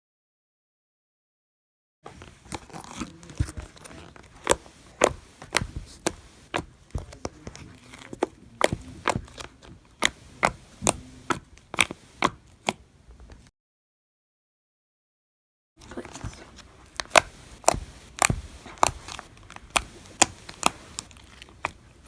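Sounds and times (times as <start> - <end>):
slime popping and crackling: 4.3 - 7.2, 16.8 - 21.9.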